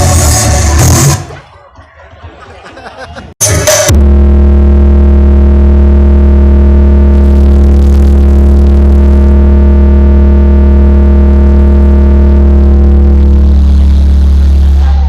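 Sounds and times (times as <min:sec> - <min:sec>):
sustained synthesizer chord: 0:03.9 - 0:14.8
deep bass drone: 0:03.9 - 0:15.0.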